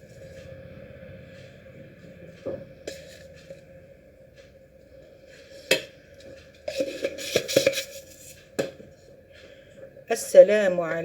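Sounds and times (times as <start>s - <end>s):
faint steady hum: 0.0s - 11.0s
kitchen knocks and clattering: 6.7s - 8.0s.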